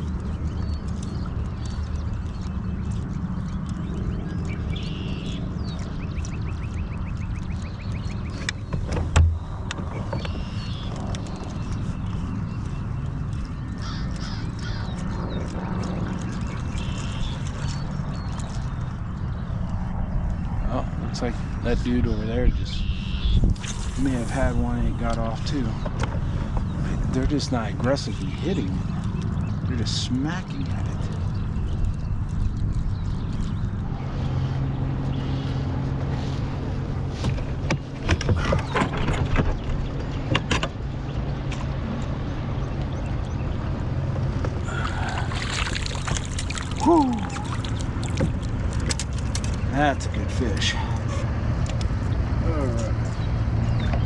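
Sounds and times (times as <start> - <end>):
birds calling: 0.0 - 54.0
fish splashing: 23.5 - 24.4, 44.6 - 49.7.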